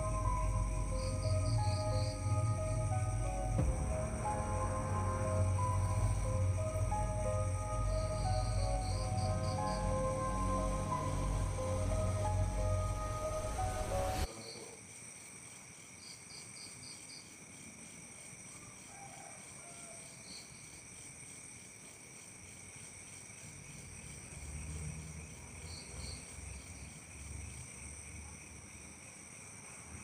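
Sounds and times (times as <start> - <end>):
music: 0.0 - 14.3
soft low rumble: 0.0 - 14.3
short insect chirps: 0.0 - 17.7
crickets and insects trilling: 0.0 - 30.0.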